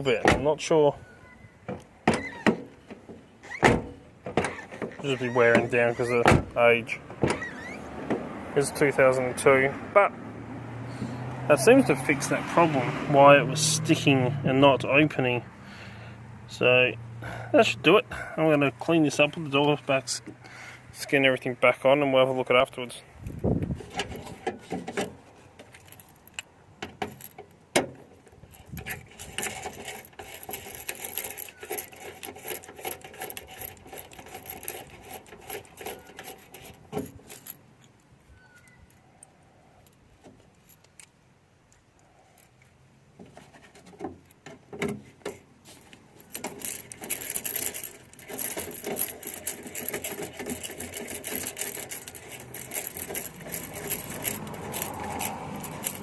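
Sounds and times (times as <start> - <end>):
small parts clicking and rattling: 23.8 - 56.0.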